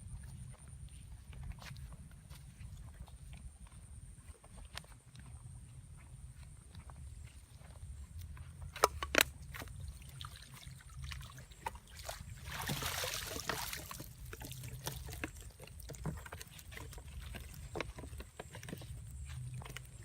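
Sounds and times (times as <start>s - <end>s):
water splashing and sloshing: 6.8s - 20.0s.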